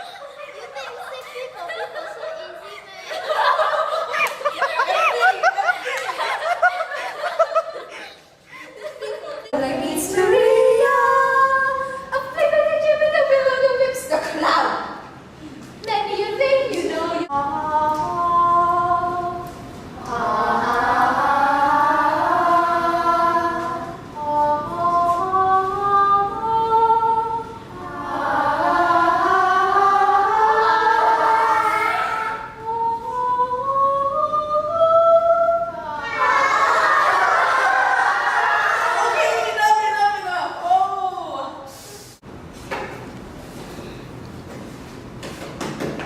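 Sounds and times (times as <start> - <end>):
group of voices singing: 16.5 - 39.1.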